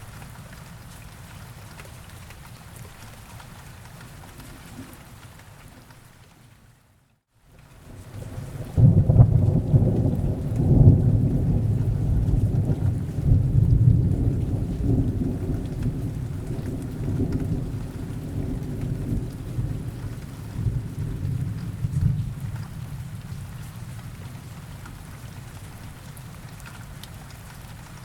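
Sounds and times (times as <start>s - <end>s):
steady rain: 0.0s - 28.0s
thunder rumbling: 8.1s - 24.5s.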